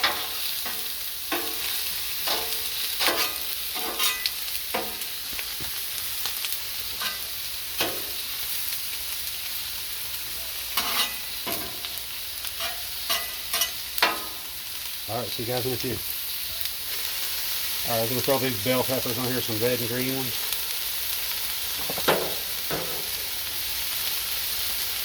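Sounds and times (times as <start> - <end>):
utensil scraping metal griddle: 0.0 - 5.8, 6.4 - 8.2, 10.7 - 14.5
food sizzling on a griddle: 0.0 - 25.0.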